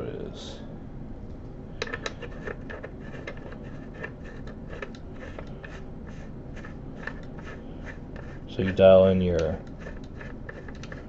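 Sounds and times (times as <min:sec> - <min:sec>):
microscope adjusters clicking: 0:09.3 - 0:11.0.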